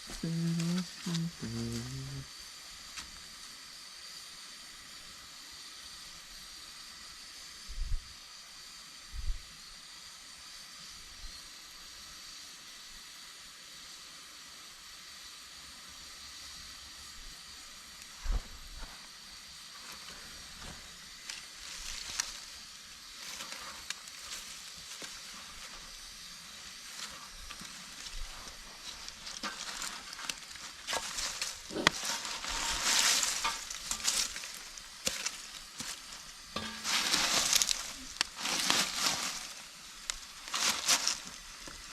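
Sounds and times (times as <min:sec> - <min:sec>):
campfire hissing and crackling: 0:00.0 - 0:41.9.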